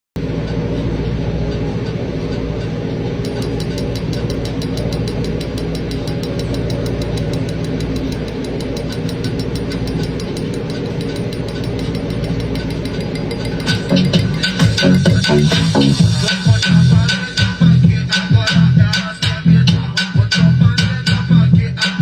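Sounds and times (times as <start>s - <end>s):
machine humming: 0.2s - 20.0s
fast mechanical ratcheting clicks: 3.2s - 17.3s.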